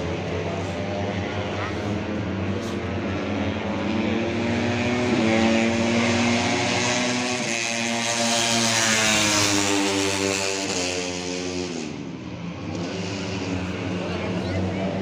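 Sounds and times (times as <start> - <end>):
racing motorcycles at high revs: 0.0 - 15.0.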